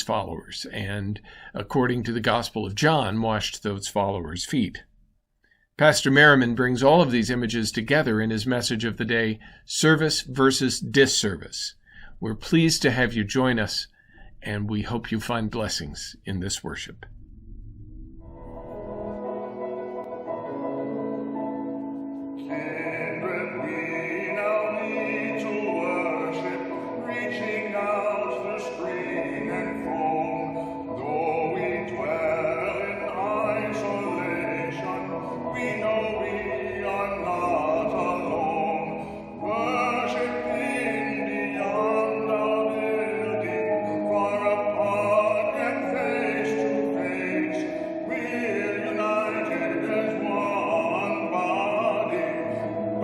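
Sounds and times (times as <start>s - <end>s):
instrumental accompaniment: 18.2s - 53.0s
operatic singing: 21.9s - 53.0s.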